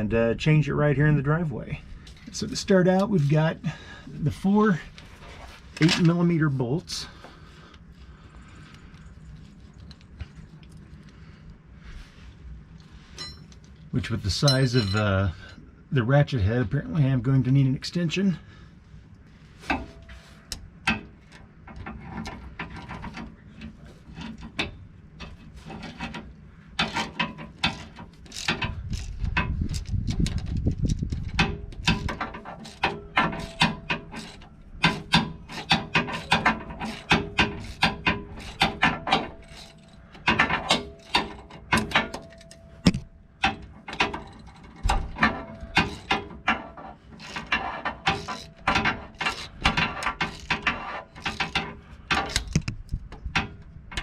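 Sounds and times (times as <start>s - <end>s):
metal tool clatter: 13.1s - 13.8s, 14.4s - 15.4s.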